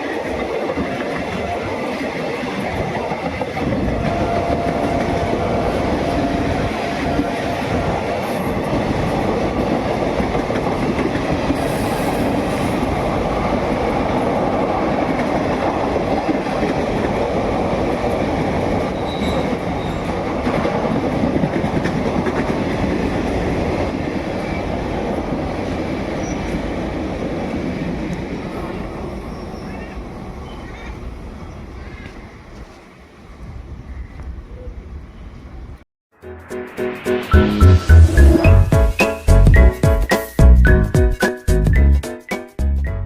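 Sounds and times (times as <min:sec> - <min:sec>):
train coaches rumbling past: 0:00.0 - 0:40.6.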